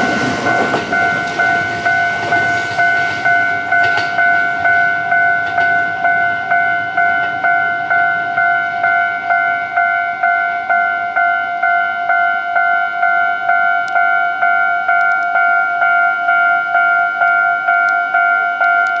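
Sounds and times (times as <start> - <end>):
level crossing warning bell ringing: 0.0 - 19.0.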